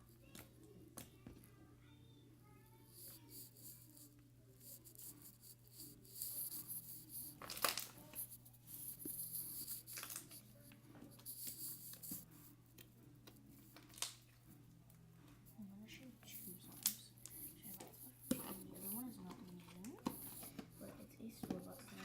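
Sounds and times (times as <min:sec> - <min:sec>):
rustling and crackling handling: 0:06.0 - 0:15.5.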